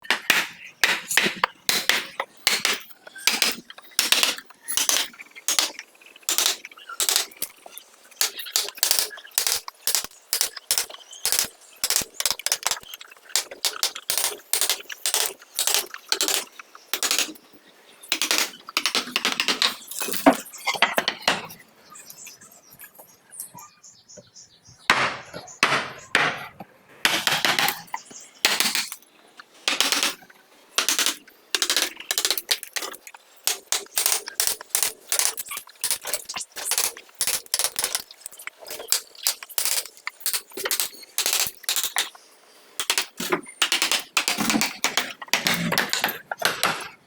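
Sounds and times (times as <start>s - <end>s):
mallet striking chisel into wood: 24.9s - 26.4s.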